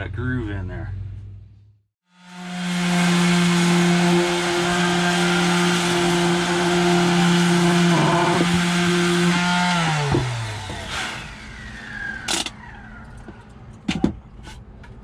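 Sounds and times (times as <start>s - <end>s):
electric power tool running: 2.1s - 12.4s.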